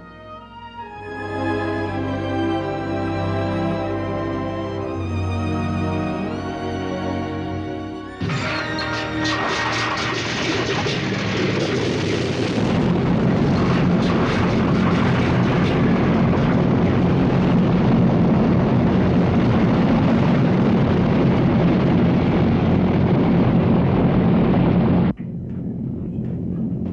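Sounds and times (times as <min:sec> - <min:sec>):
rumbling roar with low drone: 0:08.2 - 0:26.9.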